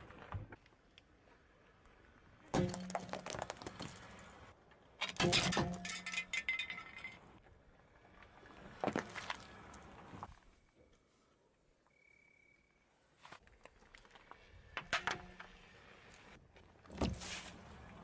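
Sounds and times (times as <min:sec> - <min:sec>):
tyres crushing crunching objects: 0:02.6 - 0:04.2.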